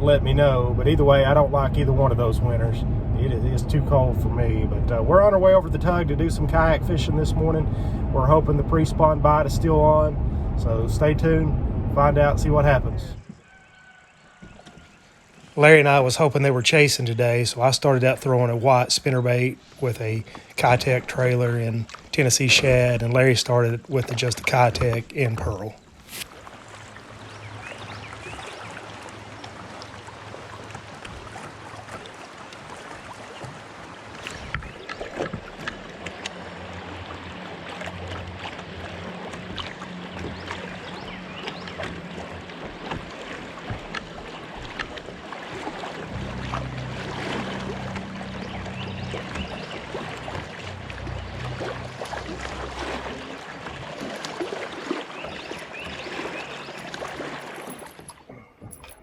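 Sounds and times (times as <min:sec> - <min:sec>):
river water moving: 0:00.0 - 0:59.0
knocks and clicks from boat: 0:13.1 - 0:15.4, 0:24.1 - 0:26.5, 0:27.6 - 0:59.0.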